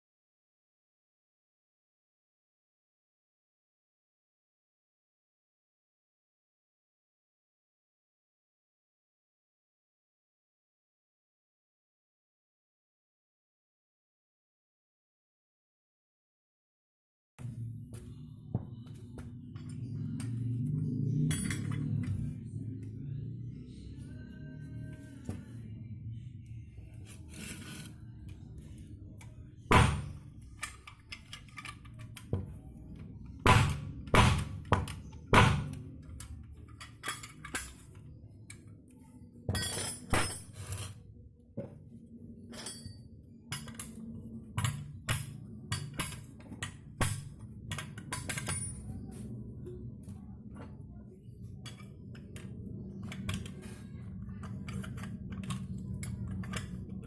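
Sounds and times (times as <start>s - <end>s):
metal tools knocking and clinking: 21.2s - 22.4s, 29.7s - 32.6s, 34.4s - 38.0s, 39.5s - 41.0s, 42.5s - 44.0s, 44.6s - 49.2s.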